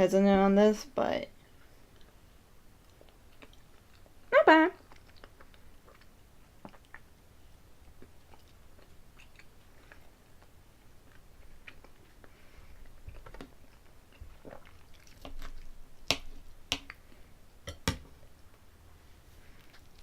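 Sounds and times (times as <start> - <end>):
chewing and mouth sounds: 1.5 - 17.1, 19.5 - 20.0.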